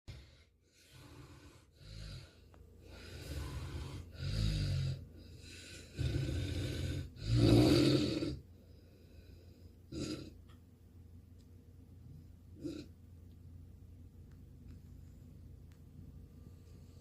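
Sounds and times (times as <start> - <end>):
man snoring: 0.1 - 8.4, 9.9 - 10.4.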